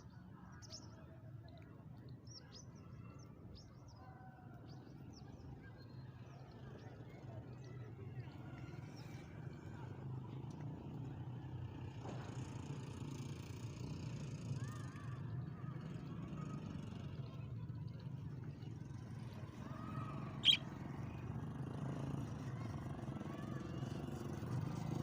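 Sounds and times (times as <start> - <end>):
budgerigars chirping: 20.4 - 20.6.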